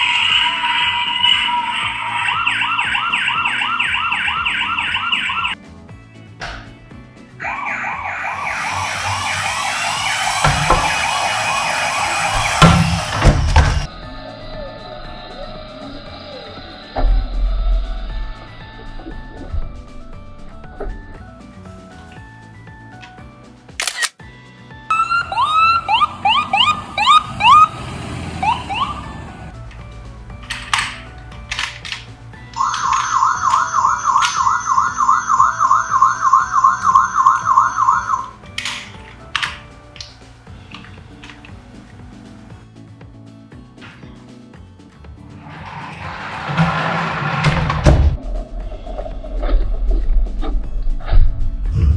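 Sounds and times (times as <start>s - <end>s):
toy police car siren wailing: 0.0s - 5.6s, 7.4s - 13.9s, 24.9s - 42.6s
short burst of noise: 7.4s - 13.9s
sharp knocks: 8.3s - 13.9s
background music: 28.4s - 48.0s.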